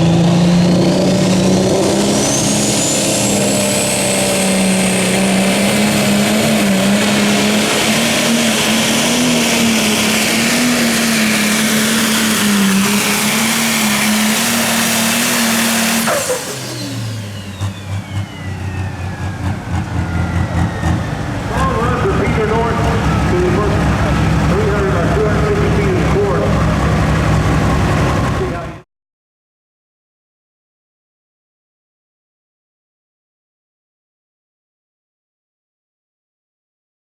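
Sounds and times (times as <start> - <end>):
engine whining at full power: 0.0 - 28.8.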